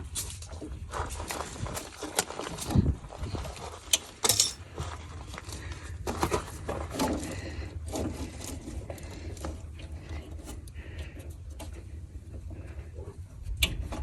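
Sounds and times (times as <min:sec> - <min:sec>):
steady low hum: 0:00.0 - 0:14.0
hand tools and metal parts knocking: 0:03.9 - 0:04.8.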